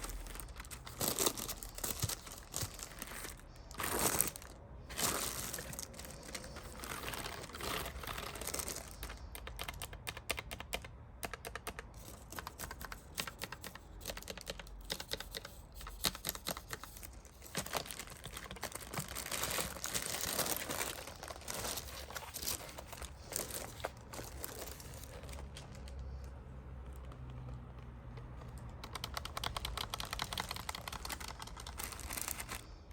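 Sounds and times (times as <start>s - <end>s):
mechanical keyboard typing: 9.0s - 17.0s, 27.0s - 32.5s.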